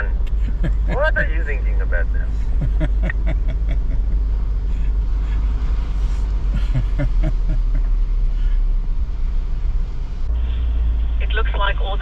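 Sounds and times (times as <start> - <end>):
person speaking: 0.0 - 3.8
vehicle driving rumble: 0.0 - 12.0.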